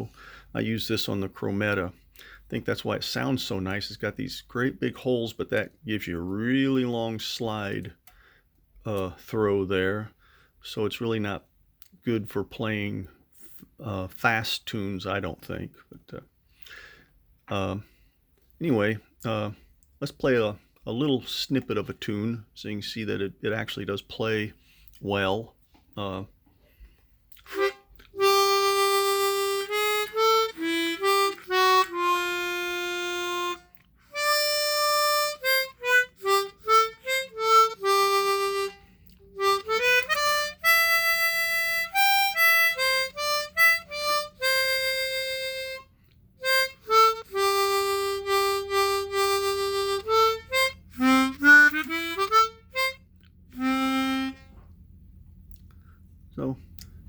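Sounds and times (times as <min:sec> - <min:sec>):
harmonica playing a melody: 0:27.4 - 0:54.6.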